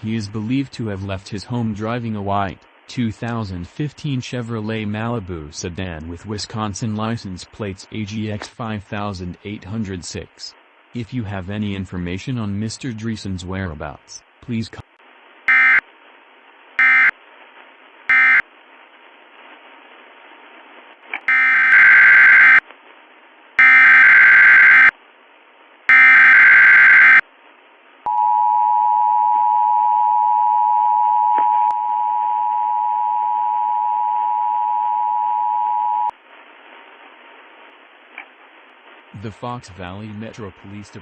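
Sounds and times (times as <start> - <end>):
warbling data tone bursts: 21.3 - 22.6, 23.6 - 24.9, 25.9 - 27.2.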